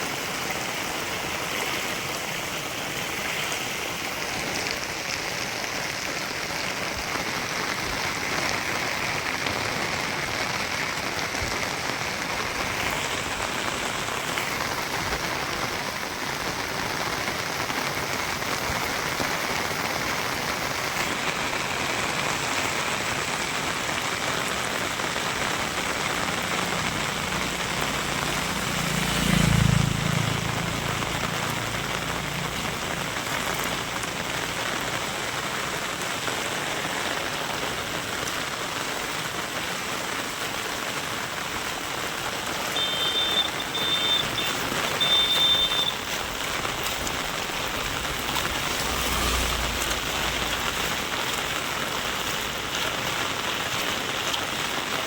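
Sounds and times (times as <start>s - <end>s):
steady rain falling: 0.0s - 55.0s
low engine hum: 26.2s - 35.3s, 43.1s - 52.7s.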